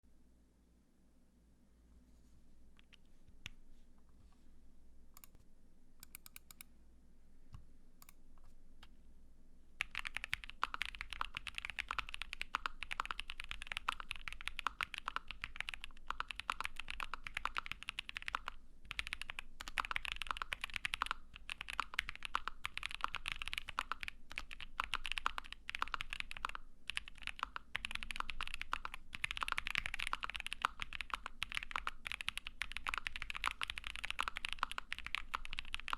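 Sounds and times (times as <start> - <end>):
mechanical keyboard typing: 6.0 - 6.6, 9.8 - 35.9.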